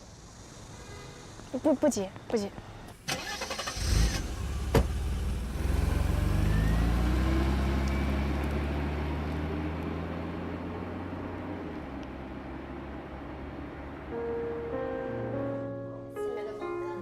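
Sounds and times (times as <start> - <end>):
car engine revving and pulling away: 3.0 - 14.1.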